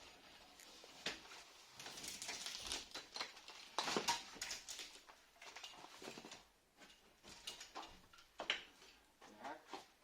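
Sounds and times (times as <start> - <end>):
objects tapping and rustling: 1.0 - 10.0.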